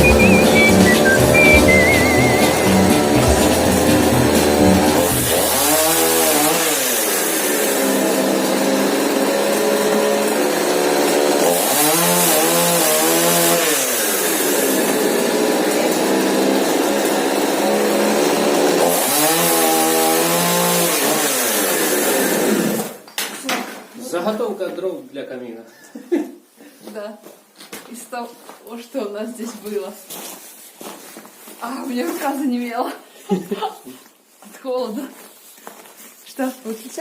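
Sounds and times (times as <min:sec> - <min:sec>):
chainsaw cutting wood: 0:00.0 - 0:23.0.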